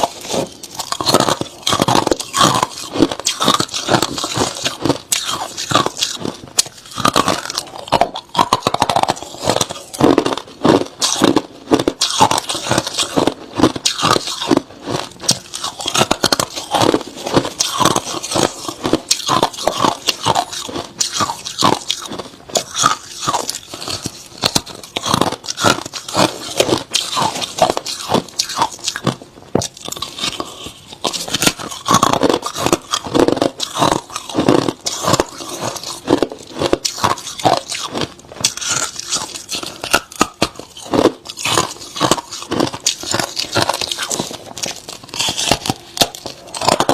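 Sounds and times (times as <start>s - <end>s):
crunching ice being chewed: 0.0s - 46.9s.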